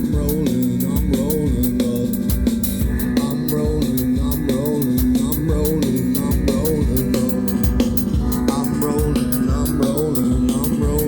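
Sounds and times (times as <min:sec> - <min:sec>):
bass: 0:00.0 - 0:11.0
drum kit beat: 0:00.0 - 0:11.0.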